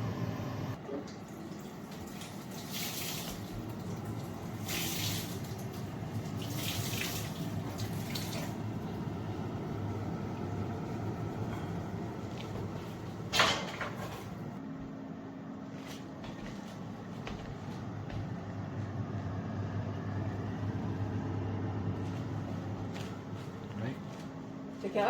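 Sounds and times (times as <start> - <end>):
water running from a tap: 0.9 - 14.5.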